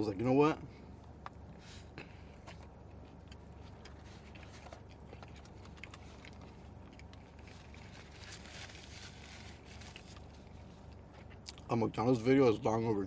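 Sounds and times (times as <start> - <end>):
person chewing food: 1.0 - 9.0, 9.6 - 11.7
rustling: 7.2 - 11.3.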